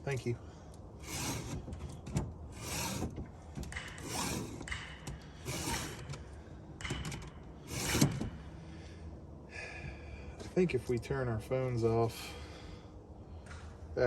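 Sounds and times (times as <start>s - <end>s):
file rasping on chainsaw chain: 1.0s - 1.7s, 4.0s - 4.7s, 5.4s - 6.1s.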